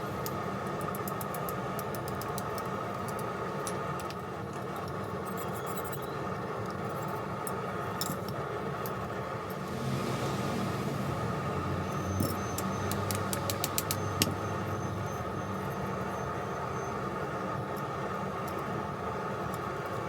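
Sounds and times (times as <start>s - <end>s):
low mechanical hum: 0.0s - 20.0s
sharp clicks: 12.6s - 14.4s.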